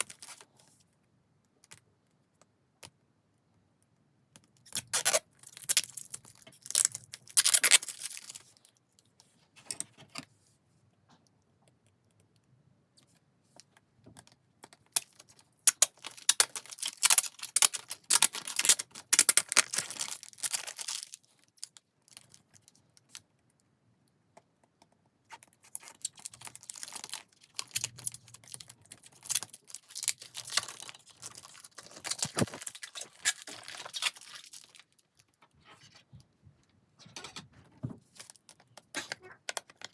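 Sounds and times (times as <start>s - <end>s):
plastic packaging crinkling and tearing: 0.0s - 0.5s, 4.7s - 8.6s, 15.0s - 22.7s, 25.6s - 35.4s.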